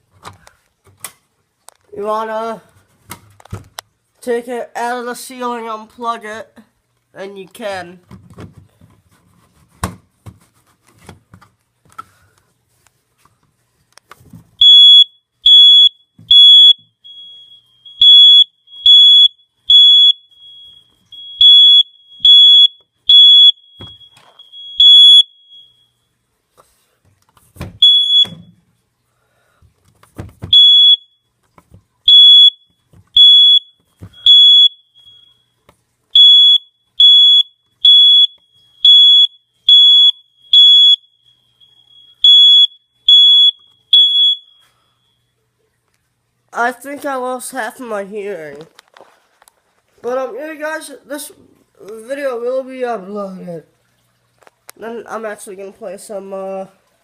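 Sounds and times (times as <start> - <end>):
smoke detector beeping: 14.6 - 26.0, 27.8 - 28.5, 30.5 - 31.3, 32.1 - 35.6, 36.2 - 45.3.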